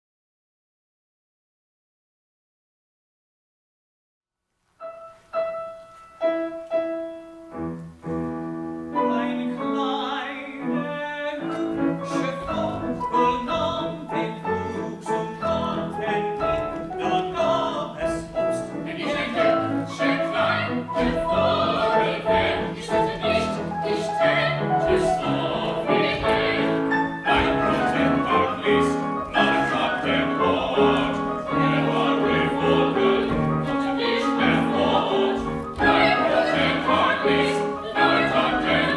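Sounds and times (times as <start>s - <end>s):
piano: 4.7s - 38.9s
operatic singing voices: 9.0s - 38.9s.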